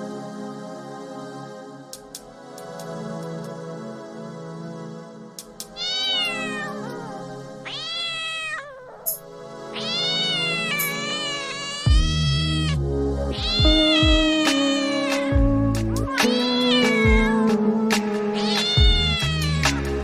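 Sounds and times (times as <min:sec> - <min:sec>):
cat meowing: 0:05.6 - 0:09.1, 0:09.8 - 0:17.6, 0:18.4 - 0:19.9
background music with deep bass: 0:11.9 - 0:20.0.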